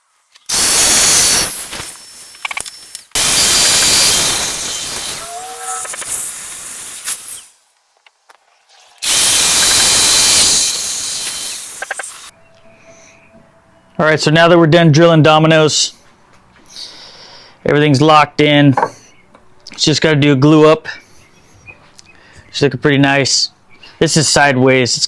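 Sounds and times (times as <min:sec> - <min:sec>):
joiner motor cutting: 0:00.5 - 0:07.6, 0:09.0 - 0:12.3.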